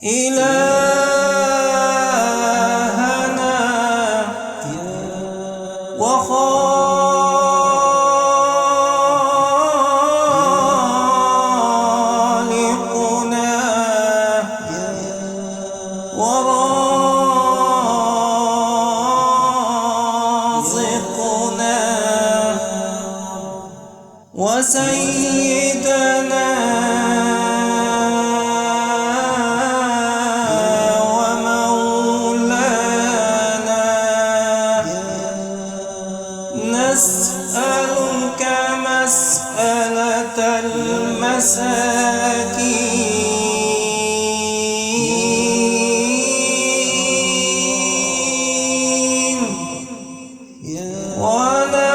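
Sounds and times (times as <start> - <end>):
man chanting: 0.0 - 51.9.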